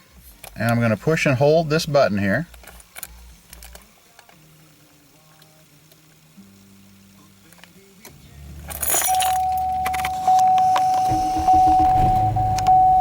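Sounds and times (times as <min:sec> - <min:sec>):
steady whine: 0:04.5 - 0:13.0
low hum: 0:08.2 - 0:13.0
car engine cranking and running: 0:08.3 - 0:13.0.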